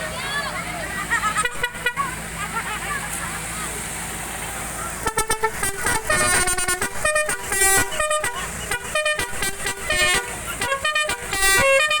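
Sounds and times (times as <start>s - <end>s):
horn tooting short notes: 1.4s - 2.2s, 5.0s - 12.0s.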